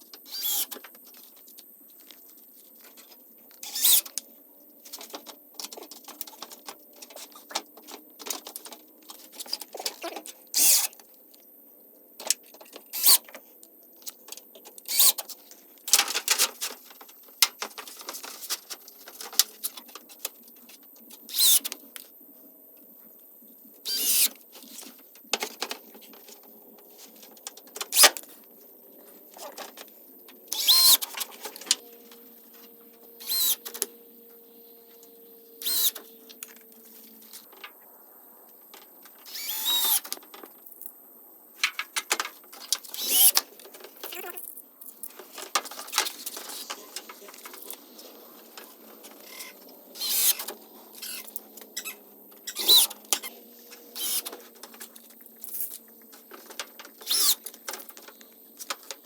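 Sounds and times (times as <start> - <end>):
clatters and scrapes on wood and metal: 4.8 - 11.0, 14.0 - 21.8, 41.6 - 59.0.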